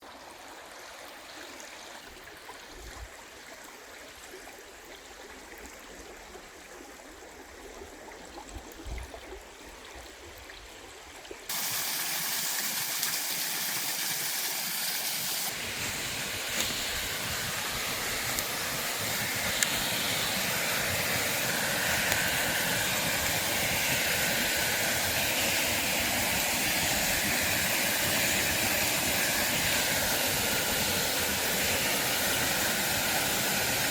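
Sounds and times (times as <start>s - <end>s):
waterfall rushing water: 11.5s - 33.9s.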